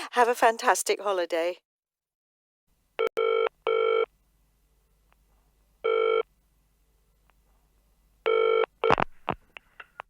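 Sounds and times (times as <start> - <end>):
telephone ringing: 3.2 - 4.1.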